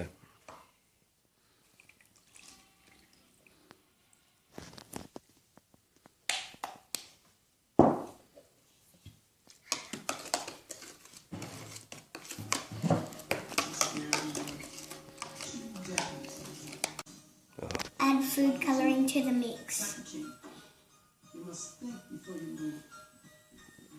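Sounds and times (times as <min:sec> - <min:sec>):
spoon clinking against a cup: 0:12.5 - 0:17.0.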